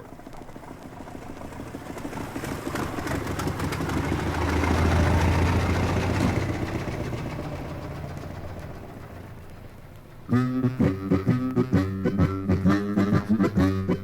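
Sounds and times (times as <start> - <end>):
car engine chugging: 0.0 - 14.0.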